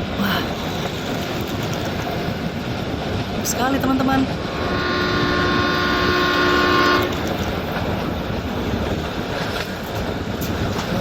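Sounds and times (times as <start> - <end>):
toy train electronic horn: 4.6 - 7.3.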